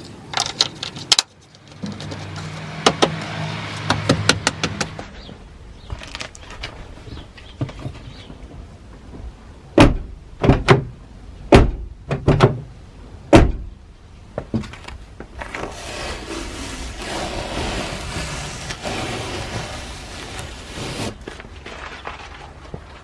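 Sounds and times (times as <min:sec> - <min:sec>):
sharp knocks and thuds: 0:07.6 - 0:12.7, 0:13.3 - 0:13.8.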